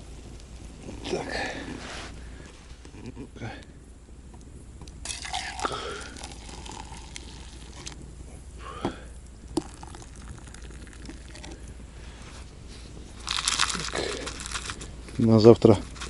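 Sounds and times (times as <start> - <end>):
rustling: 0.2 - 3.3, 9.7 - 16.0.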